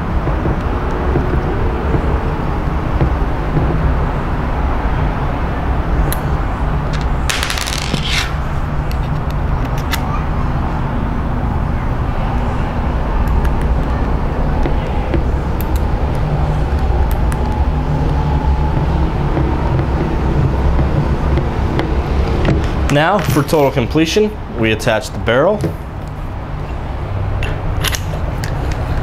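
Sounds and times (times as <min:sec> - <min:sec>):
short scrape: 0:07.3 - 0:08.6.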